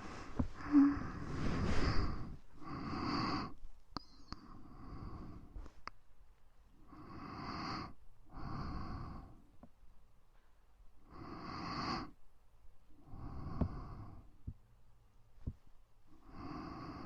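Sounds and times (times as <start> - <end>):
soft human breathing: 0.0 - 5.8, 6.8 - 9.6, 13.0 - 14.6, 15.4 - 17.0.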